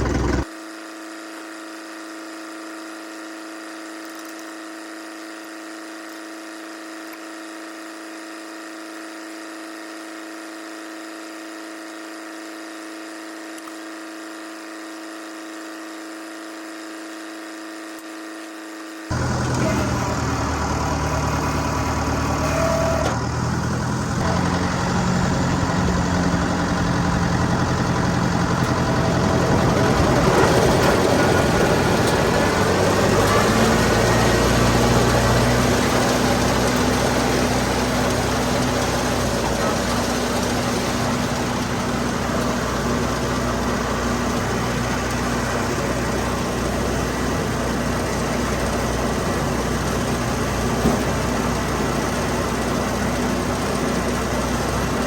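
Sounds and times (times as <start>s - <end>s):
tractor engine running: 0.0s - 0.5s, 19.1s - 55.0s.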